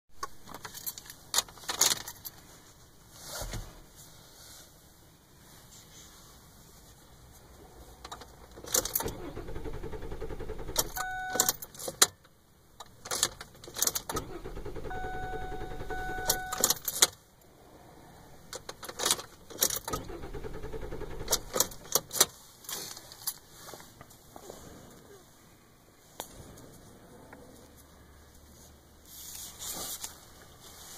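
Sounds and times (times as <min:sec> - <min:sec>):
car engine cranking: 0:08.1 - 0:12.0, 0:13.1 - 0:17.1, 0:18.6 - 0:22.3
steady beeps: 0:11.0 - 0:11.5, 0:14.9 - 0:16.6.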